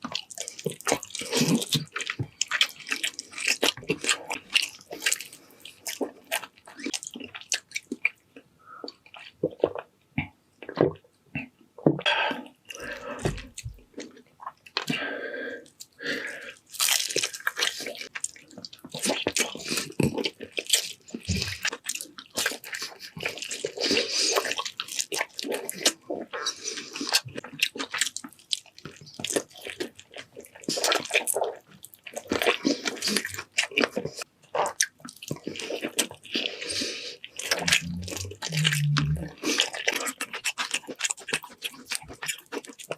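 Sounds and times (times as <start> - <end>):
wet chewing and mouth smacking: 0.0 - 42.9
slurping: 35.4 - 42.0.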